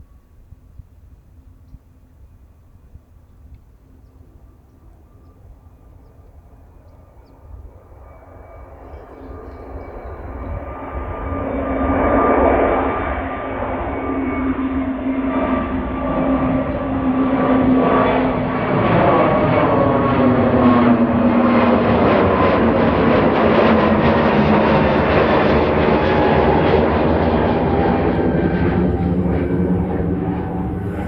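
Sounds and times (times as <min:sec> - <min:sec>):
jet engines roaring: 0:08.5 - 0:31.0.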